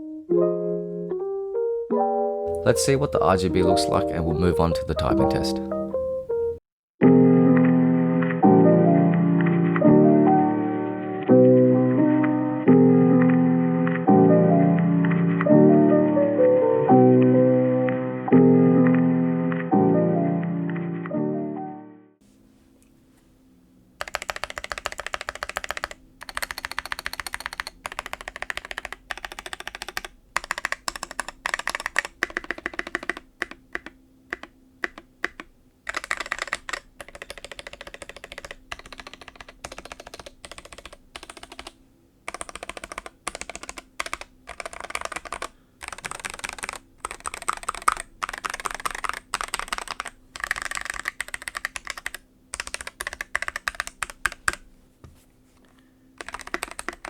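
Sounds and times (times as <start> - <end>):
mechanical keyboard typing: 2.5 - 5.6, 24.0 - 54.7, 55.7 - 57.0.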